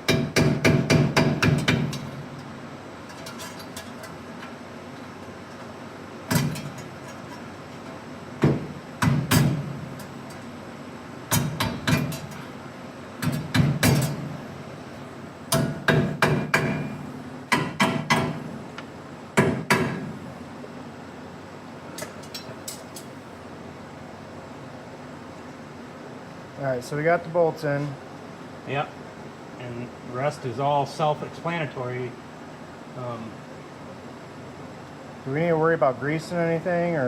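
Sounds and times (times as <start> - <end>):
hammer striking steel: 15.5 - 16.9.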